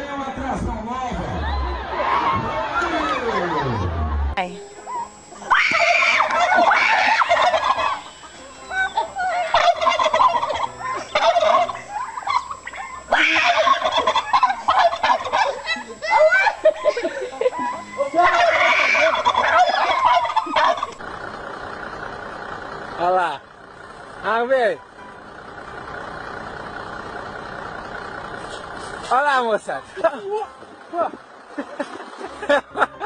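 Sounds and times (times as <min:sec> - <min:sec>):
birds warbling calls: 0:04.8 - 0:21.1.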